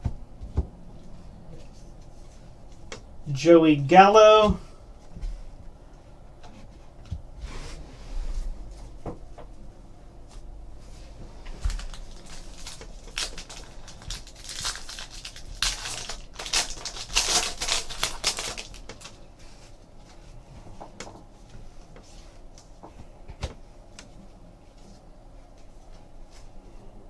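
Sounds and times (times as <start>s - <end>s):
card wrappers tearing and crinkling: 11.6s - 19.2s.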